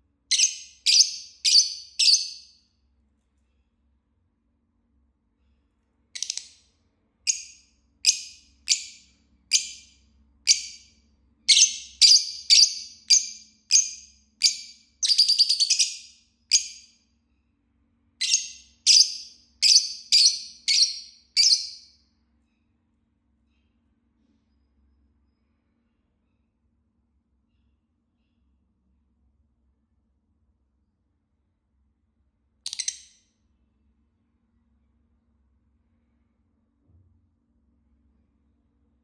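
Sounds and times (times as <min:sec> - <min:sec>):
lovebird chirping: 0:00.3 - 0:02.6, 0:06.2 - 0:06.6, 0:07.3 - 0:10.9, 0:11.5 - 0:17.0, 0:18.2 - 0:22.0.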